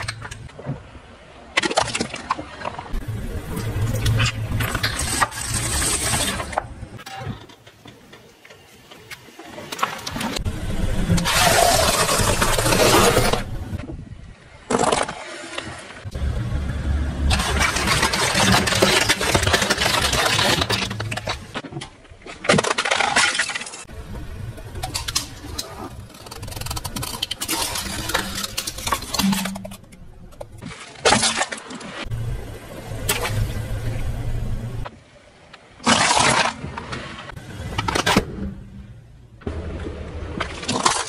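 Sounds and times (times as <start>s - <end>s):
objects cracking under tyres: 1.5s - 10.5s, 11.1s - 13.9s, 14.6s - 15.7s, 17.2s - 23.9s, 24.6s - 32.1s, 35.5s - 38.5s, 40.3s - 41.0s.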